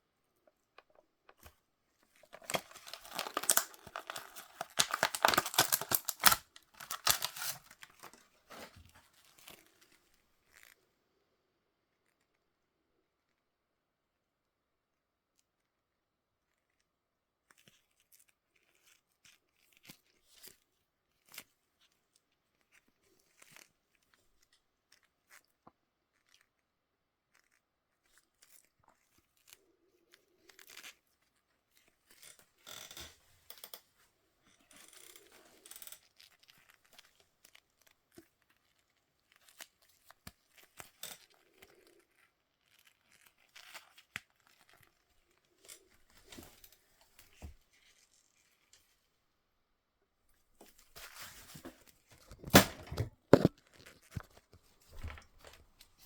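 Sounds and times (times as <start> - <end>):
packaging rustling: 2.2 - 9.7.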